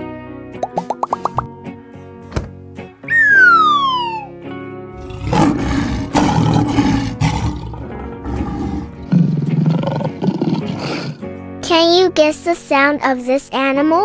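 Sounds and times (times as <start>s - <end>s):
children's background music: 0.0s - 5.8s, 10.8s - 14.0s
falling cartoon whistle: 3.1s - 4.3s
lion roaring: 4.9s - 11.2s.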